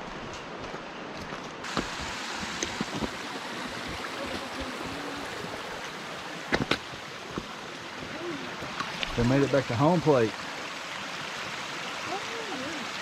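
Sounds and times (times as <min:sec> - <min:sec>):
mountain stream rushing: 0:00.0 - 0:13.0.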